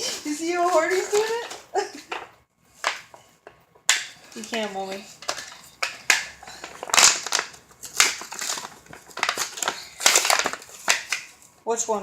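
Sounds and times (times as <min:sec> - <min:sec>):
foil wrapper crinkling: 0:00.0 - 0:01.7, 0:04.0 - 0:11.5.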